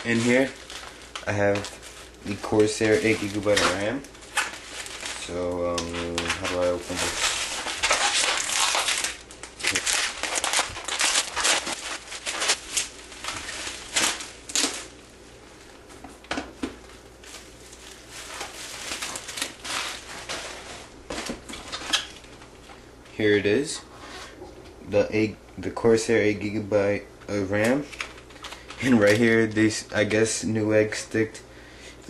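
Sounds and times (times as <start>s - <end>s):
packaging crinkling and tearing: 0.0s - 15.0s, 16.8s - 22.5s, 27.6s - 29.8s.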